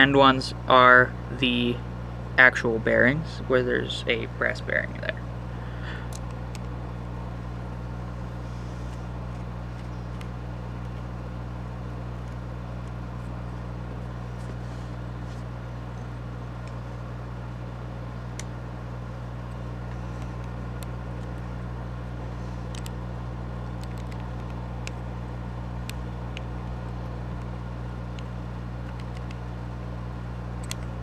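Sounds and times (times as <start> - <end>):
low background hum: 0.0 - 31.0
faint light clicks: 30.6 - 30.9.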